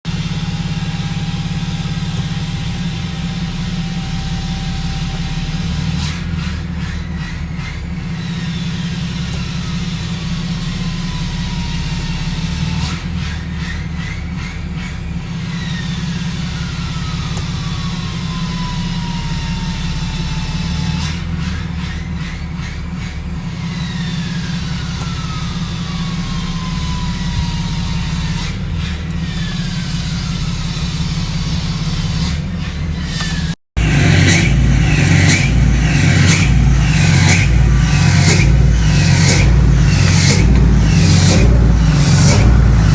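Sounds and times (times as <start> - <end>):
diesel engine idling: 0.0 - 42.9
high whine sliding down: 33.0 - 42.9.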